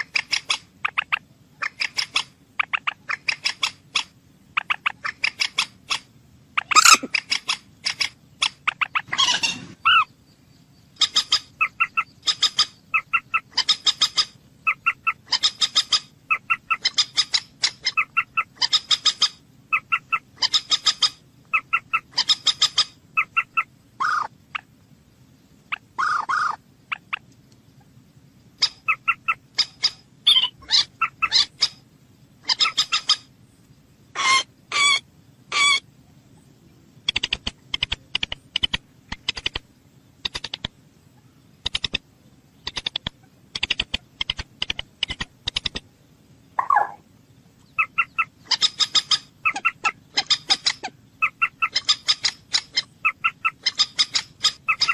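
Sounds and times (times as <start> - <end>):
bird rattling calls: 0.0 - 10.1, 37.0 - 39.6, 40.2 - 40.7, 41.6 - 42.0, 42.6 - 45.8, 47.8 - 54.9.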